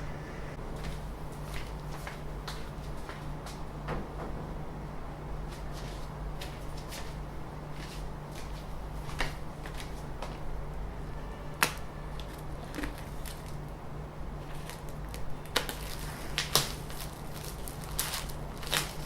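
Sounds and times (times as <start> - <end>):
steady low hum: 0.0 - 19.0
packaging being handled: 14.5 - 19.0.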